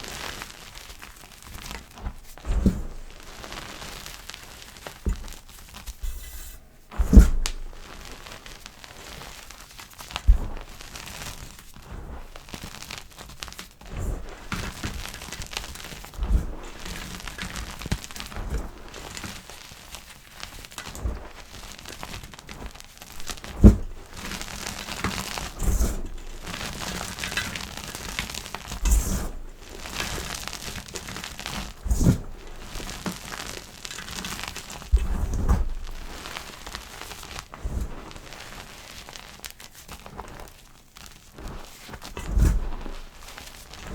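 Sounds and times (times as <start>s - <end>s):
chalk crumbling crackle: 0.0s - 6.6s, 7.4s - 43.9s
dull thump of chalk giving way: 2.4s - 3.0s, 6.0s - 7.7s, 10.3s - 10.7s, 23.3s - 24.0s.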